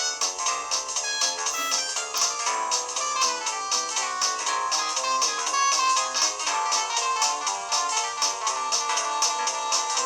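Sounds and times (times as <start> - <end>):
polyphonic phone ringtone: 1.5 - 2.2.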